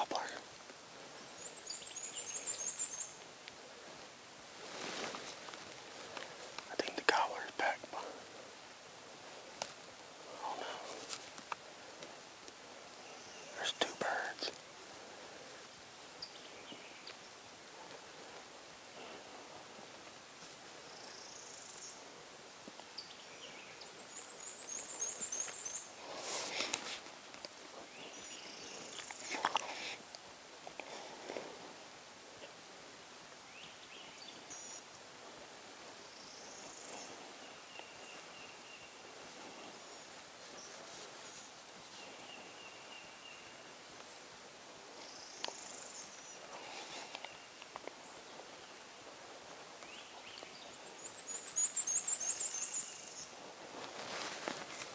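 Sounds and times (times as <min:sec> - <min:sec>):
small songbirds singing: 0:00.0 - 0:03.2, 0:13.0 - 0:14.5, 0:15.7 - 0:17.5, 0:22.8 - 0:26.7, 0:27.8 - 0:29.8, 0:36.0 - 0:43.8, 0:45.0 - 0:49.1, 0:49.8 - 0:53.4
background hiss: 0:00.0 - 0:54.9
high bird or insect calls: 0:01.2 - 0:03.2, 0:22.9 - 0:26.4, 0:33.5 - 0:34.9, 0:49.8 - 0:53.4
dry leaves rustling: 0:04.5 - 0:06.6, 0:53.4 - 0:54.9
light ticks: 0:45.4 - 0:45.7.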